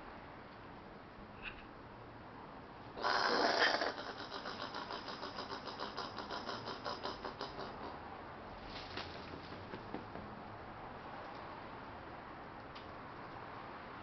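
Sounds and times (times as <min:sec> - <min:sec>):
possum chugging growl: 0:03.0 - 0:08.1
possum harsh outburst: 0:03.0 - 0:08.1.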